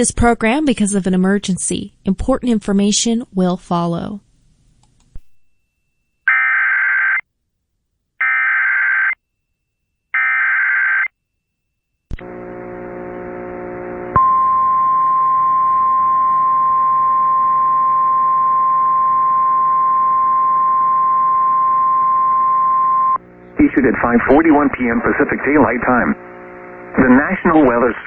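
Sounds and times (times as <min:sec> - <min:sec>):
click: 0:04.8 - 0:05.2
quiet humming: 0:12.1 - 0:28.0
steady warning tone: 0:12.2 - 0:28.0.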